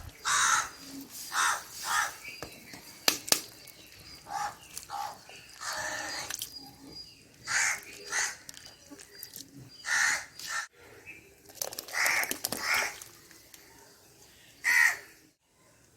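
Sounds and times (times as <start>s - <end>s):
crows cawing: 0.2s - 0.7s, 1.3s - 2.1s, 7.5s - 8.4s, 9.8s - 10.7s, 14.6s - 15.1s.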